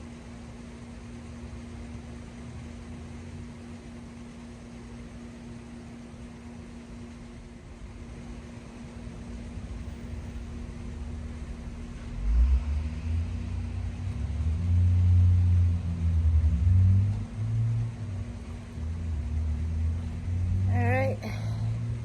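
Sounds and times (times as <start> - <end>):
faint steady hum: 0.0 - 22.0
low rumble in heavy surges: 6.5 - 22.0.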